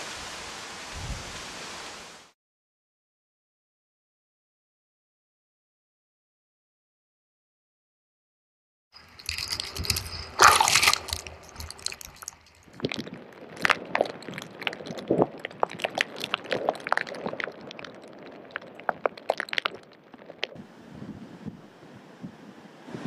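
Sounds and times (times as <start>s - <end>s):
rushing water: 0.0s - 2.4s, 9.0s - 20.6s
water sloshing and splashing: 9.0s - 20.6s.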